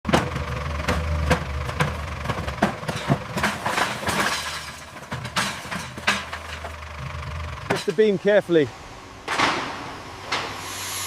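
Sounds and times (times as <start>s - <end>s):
debris knocks and clinks: 0.1s - 6.8s
scraping: 0.2s - 8.0s.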